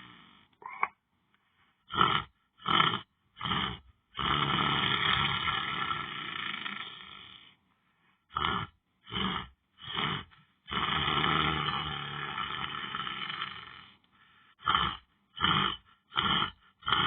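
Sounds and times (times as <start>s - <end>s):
person snoring: 0.0s - 0.9s, 1.9s - 7.6s, 8.3s - 17.0s.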